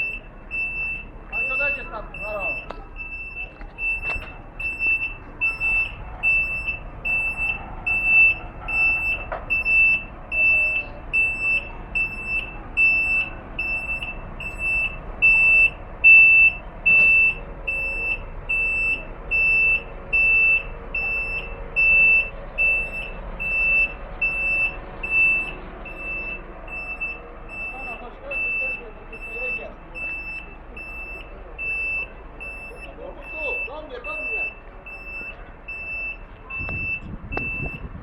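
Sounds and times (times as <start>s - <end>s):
reversing alarm beeping: 0.0s - 37.9s
low engine rumble: 0.0s - 38.0s.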